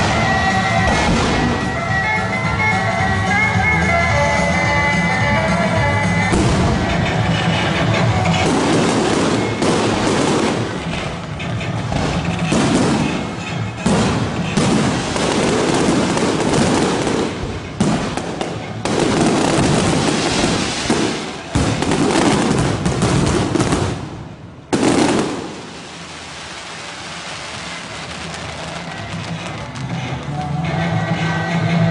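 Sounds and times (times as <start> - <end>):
fireworks crackles and bangs: 0.0 - 2.6, 5.4 - 30.8.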